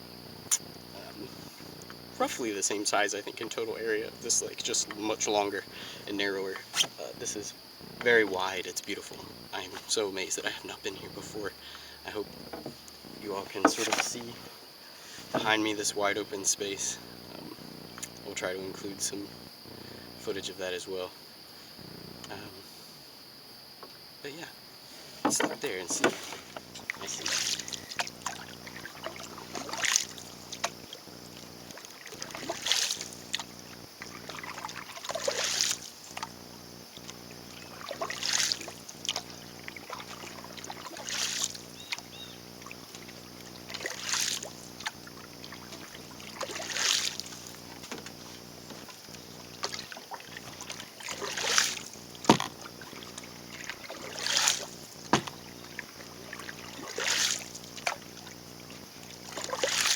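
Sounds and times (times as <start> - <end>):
paddle strokes in water: 12.1 - 15.7, 24.9 - 59.9.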